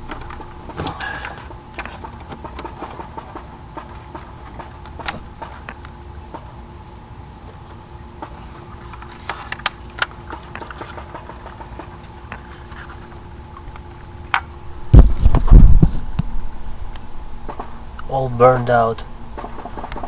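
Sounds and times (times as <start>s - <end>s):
plastic parts clicking: 0.0s - 5.2s, 8.8s - 13.0s
low rumble on microphone: 14.6s - 18.4s.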